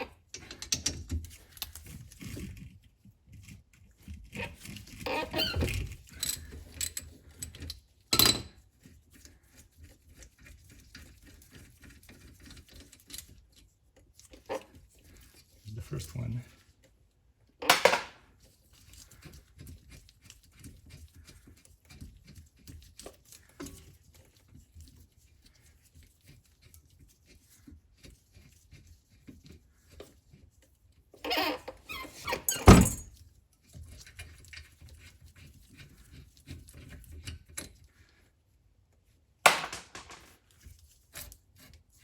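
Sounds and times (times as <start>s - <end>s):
hand tools clicking and tapping: 0.3s - 1.7s.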